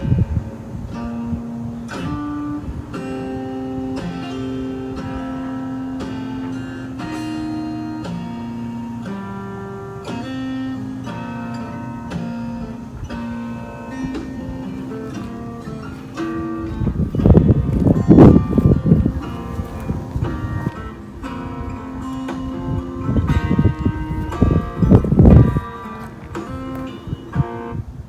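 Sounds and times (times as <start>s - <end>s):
acoustic guitar plucked chords: 0.0s - 28.0s.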